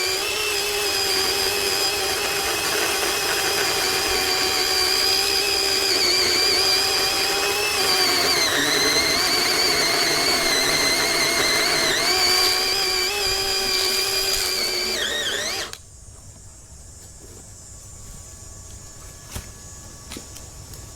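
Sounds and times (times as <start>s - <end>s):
electric chainsaw whining: 0.0s - 15.8s.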